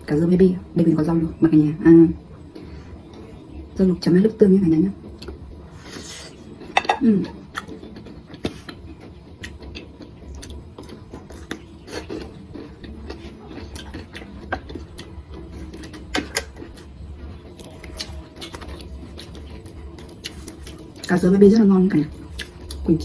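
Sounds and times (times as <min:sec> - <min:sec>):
chewing: 0:07.3 - 0:21.1, 0:22.1 - 0:22.9.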